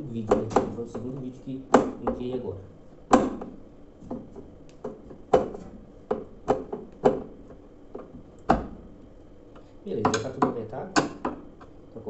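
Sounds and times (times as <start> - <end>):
tools knocking on metal parts: 10.0 - 11.6.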